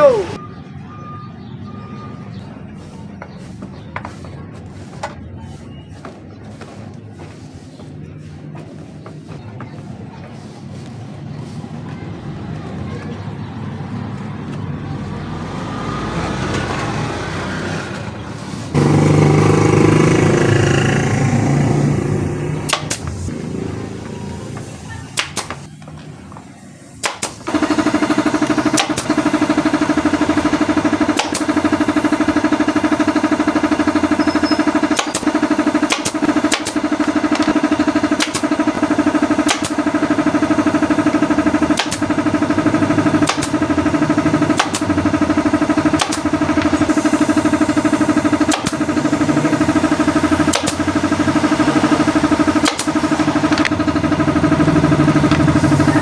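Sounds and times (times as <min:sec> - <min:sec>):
motor hum: 0:18.7 - 0:24.9, 0:27.5 - 0:56.0.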